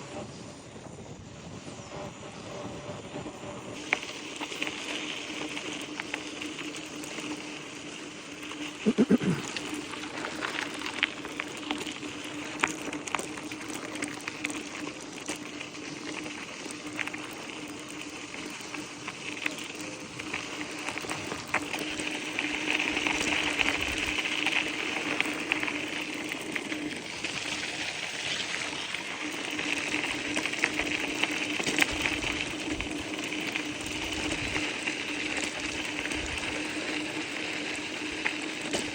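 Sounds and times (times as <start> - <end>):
bicycle tyres crackling on ground: 0.0 - 38.9
steady hum: 7.5 - 11.2.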